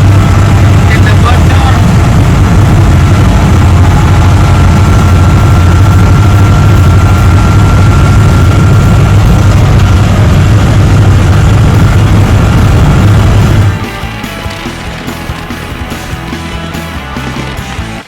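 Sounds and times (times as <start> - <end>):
car engine and road noise: 0.0 - 18.0.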